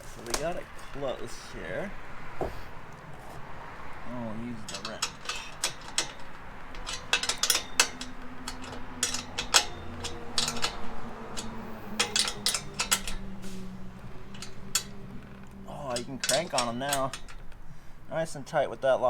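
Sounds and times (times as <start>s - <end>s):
wrench clicking on bolts: 2.9s - 18.7s.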